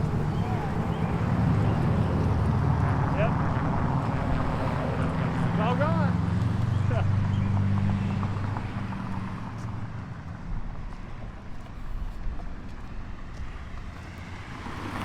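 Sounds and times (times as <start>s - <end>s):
vehicle engine humming: 0.0s - 15.0s.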